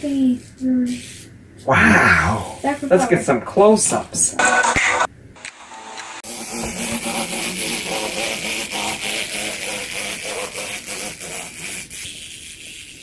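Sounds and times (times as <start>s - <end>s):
clockwork toy motor whirring: 5.8s - 13.0s.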